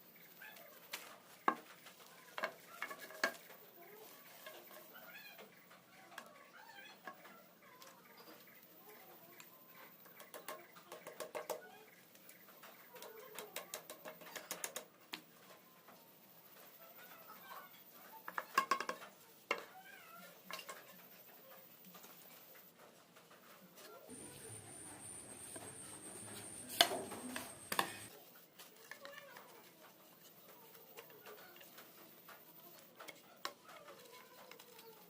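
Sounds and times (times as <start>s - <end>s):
faint bird calls: 24.1s - 28.1s.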